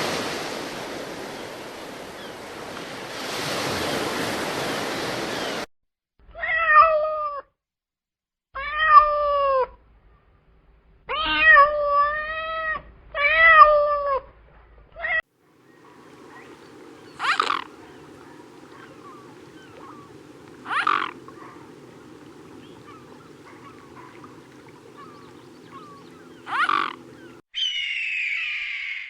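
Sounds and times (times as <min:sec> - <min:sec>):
background hum: 0:09.1 - 0:27.4
animal harsh calls: 0:15.8 - 0:29.0
animal squawking call: 0:15.8 - 0:29.0.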